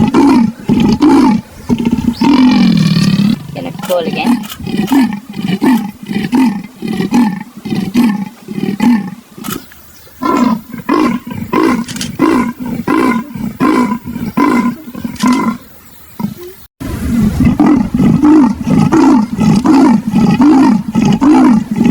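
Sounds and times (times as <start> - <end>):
leopard sawing call grunts: 0.0 - 15.6.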